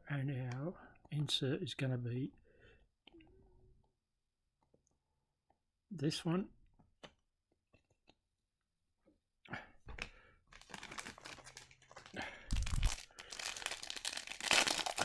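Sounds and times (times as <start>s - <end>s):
wrapper tearing and crinkling: 10.5s - 15.0s.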